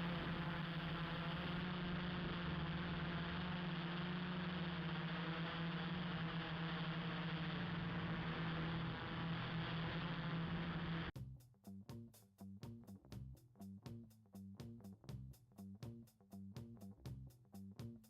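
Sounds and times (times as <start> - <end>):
low hum: 0.0 - 11.1.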